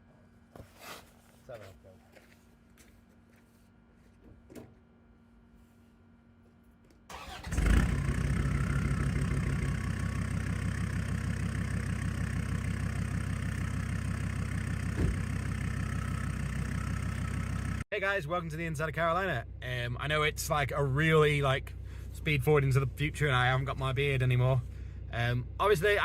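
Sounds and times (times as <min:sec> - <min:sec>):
diesel engine starting and idling: 0:07.1 - 0:26.0.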